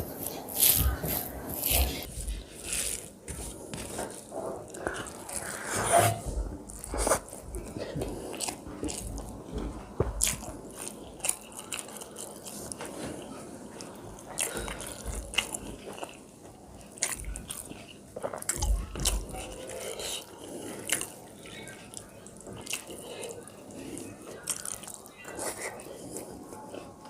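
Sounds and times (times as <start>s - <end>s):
chewing with wet smacks: 6.7s - 26.8s.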